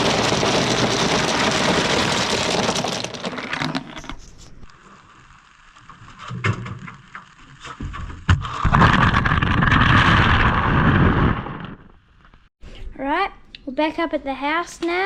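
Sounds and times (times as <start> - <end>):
ice cubes rattling into cooler: 0.0 - 4.1.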